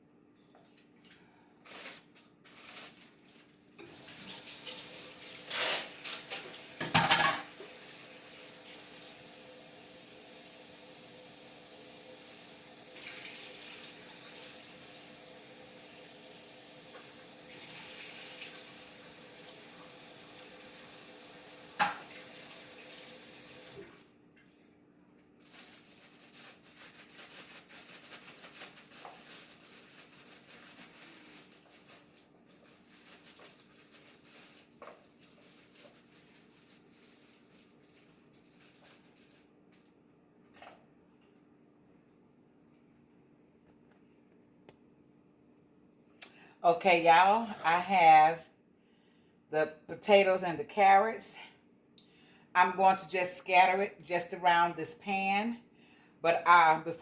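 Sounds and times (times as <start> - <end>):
tap running into sink: 21.8 - 22.5.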